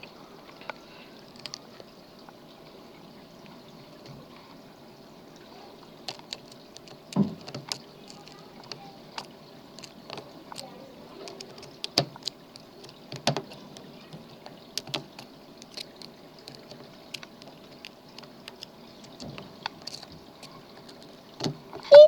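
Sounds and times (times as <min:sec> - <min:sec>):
faint steady hiss: 0:00.0 - 0:22.0
lock pick clicking in lock: 0:14.8 - 0:20.1.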